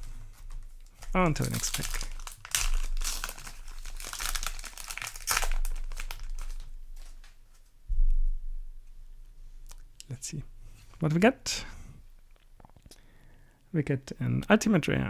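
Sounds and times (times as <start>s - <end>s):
foil wrapper crinkling and tearing: 0.0s - 7.3s.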